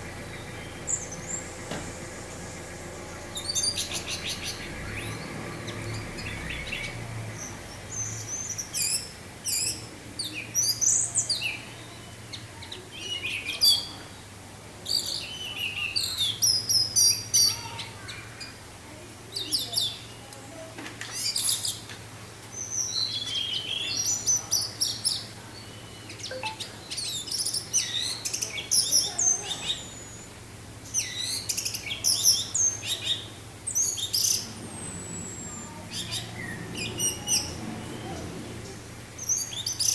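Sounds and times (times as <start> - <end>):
thrush singing: 32.4 - 39.9
steady low hum: 33.5 - 39.7.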